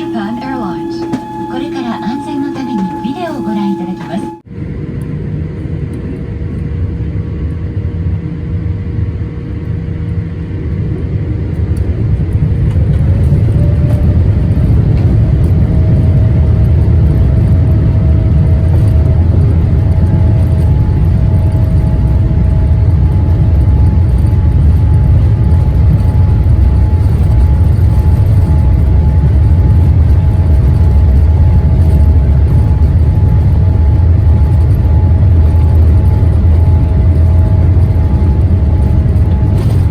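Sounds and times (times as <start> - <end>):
faint whining tones: 0.0 - 4.4
jet engines rumbling: 0.0 - 39.9.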